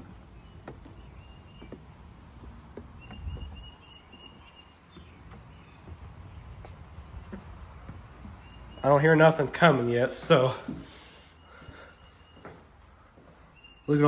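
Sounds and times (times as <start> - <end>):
light clicks and knocks: 0.0 - 9.2
bird chirps: 0.0 - 9.6, 10.2 - 12.7, 13.3 - 14.0.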